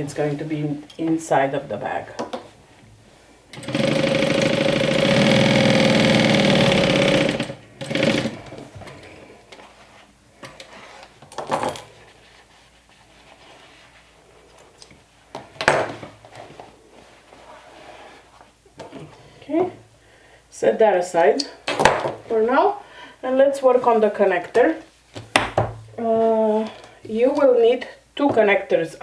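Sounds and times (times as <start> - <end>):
sewing machine stitching: 3.5 - 9.0.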